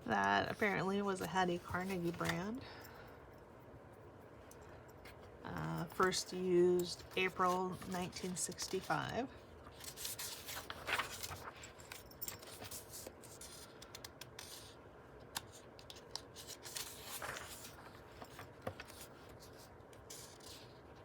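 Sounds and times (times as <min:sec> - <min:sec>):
paper rustling: 0:06.0 - 0:14.8, 0:15.4 - 0:20.9.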